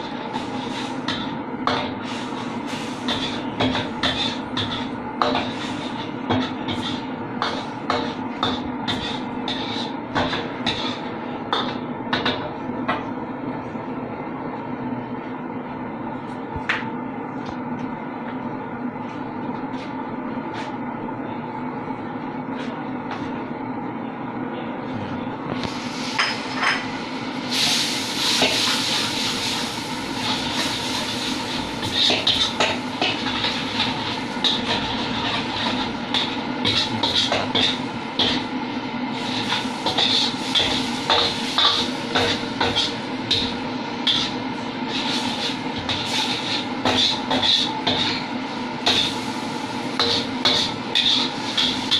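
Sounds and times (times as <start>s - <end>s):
cooking background noise: 0.0s - 51.9s
low running hum: 0.0s - 51.9s
metal spatula scraping wok: 39.1s - 48.3s, 50.0s - 51.9s.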